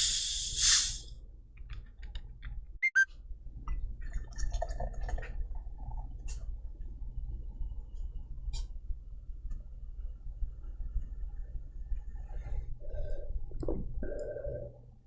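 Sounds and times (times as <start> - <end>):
soda can opening fizz: 0.0 - 1.0.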